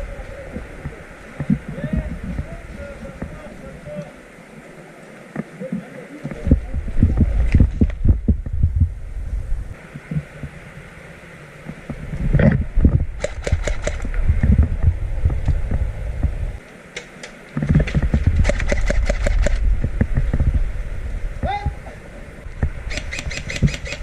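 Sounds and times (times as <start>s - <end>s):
sharp clicks: 13.2s - 14.1s, 16.9s - 19.6s, 22.9s - 24.0s.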